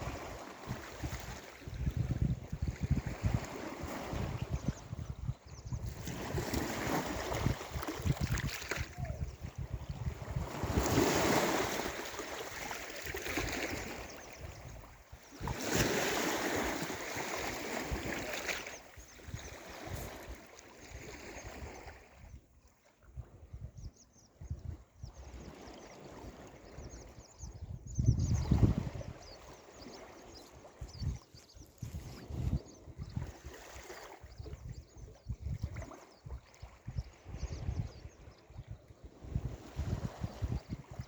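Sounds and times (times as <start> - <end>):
wind buffeting microphone: 0.0 - 22.4, 23.2 - 41.0
sea waves breaking on shore: 5.9 - 22.2.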